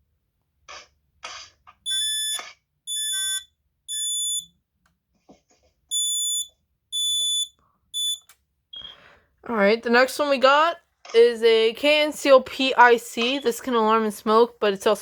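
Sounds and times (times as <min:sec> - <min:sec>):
smoke alarm beeps: 0:01.9 - 0:04.5, 0:05.9 - 0:09.0, 0:13.3 - 0:13.6.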